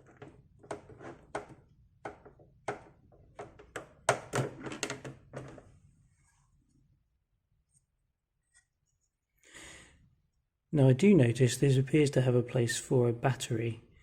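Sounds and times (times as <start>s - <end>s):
plastic clicks and knocks: 0.0s - 5.7s.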